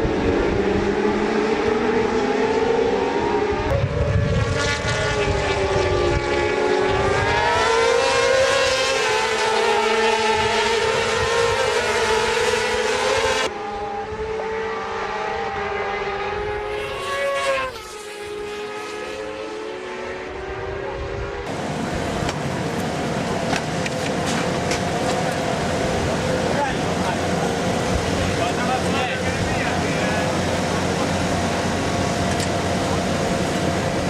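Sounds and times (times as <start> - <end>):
racing motorcycle engines revving: 0.0 - 34.0
quieter engine sound: 12.1 - 34.0.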